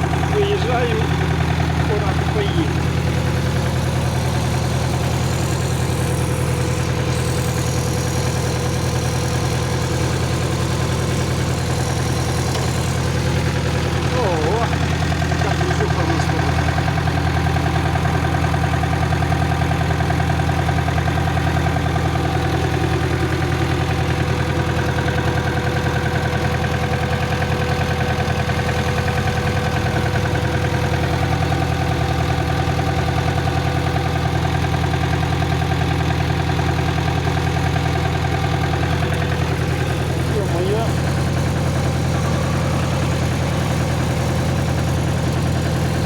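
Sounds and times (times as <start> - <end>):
tractor diesel engine running: 0.0 - 46.0.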